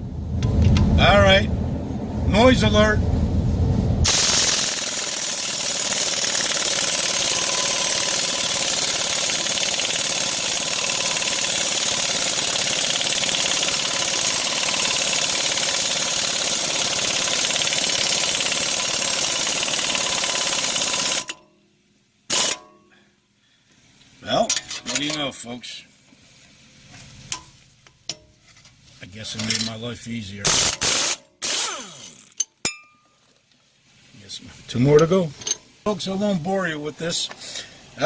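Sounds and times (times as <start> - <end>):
pneumatic impact wrench running: 4.1 - 21.4, 22.3 - 22.7, 30.5 - 32.2.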